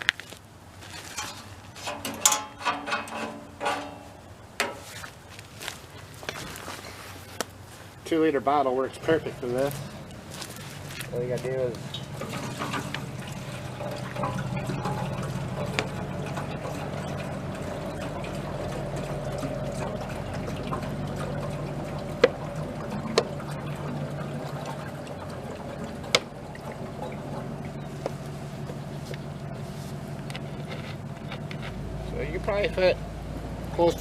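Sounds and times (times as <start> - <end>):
water pouring into a tank: 8.9 - 30.2.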